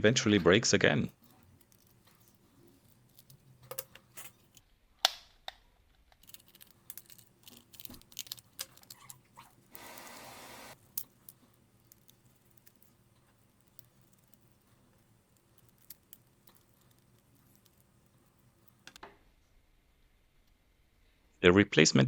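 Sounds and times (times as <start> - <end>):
plastic parts clicking and tapping: 2.7 - 9.2
scraping hiss: 9.7 - 10.8.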